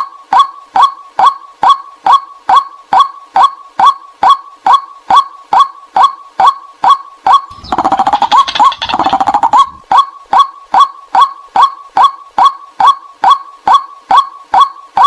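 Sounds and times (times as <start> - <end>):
rough bird chattering: 7.5 - 9.8
waterhen calling: 7.5 - 9.9.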